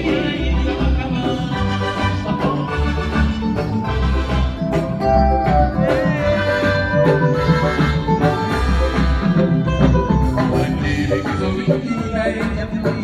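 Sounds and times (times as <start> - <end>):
band playing upbeat dance music: 0.0 - 13.0.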